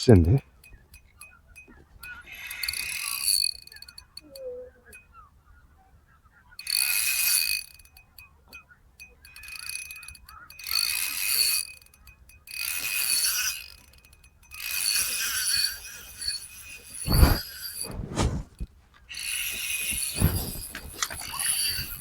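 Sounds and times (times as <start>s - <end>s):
fishing reel gears whirring: 0.4s - 5.0s, 6.6s - 18.0s, 18.6s - 22.0s
low thumps: 17.1s - 18.7s.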